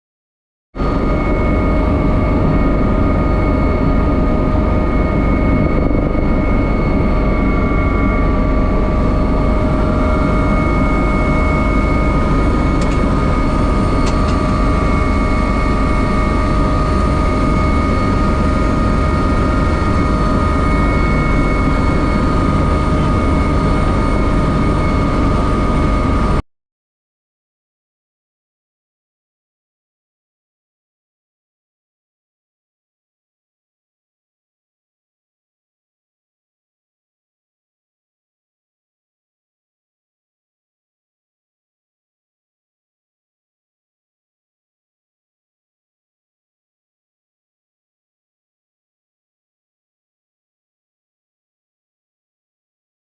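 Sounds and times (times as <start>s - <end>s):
helicopter rotor and engine drone: 0.8s - 26.4s
high whine: 0.8s - 26.4s.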